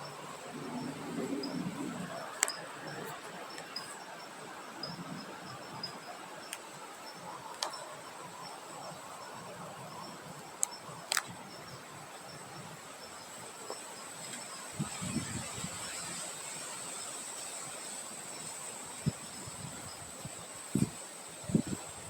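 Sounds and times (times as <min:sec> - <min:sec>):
high insect drone: 0:00.0 - 0:22.0
soft wind hiss: 0:00.0 - 0:22.0.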